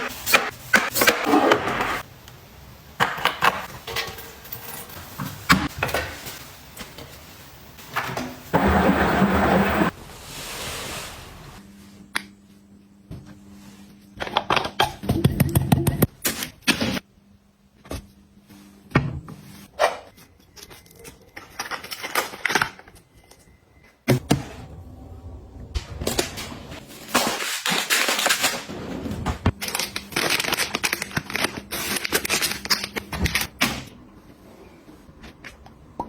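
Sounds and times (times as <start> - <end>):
plastic packaging rustling: 29.5 - 33.5.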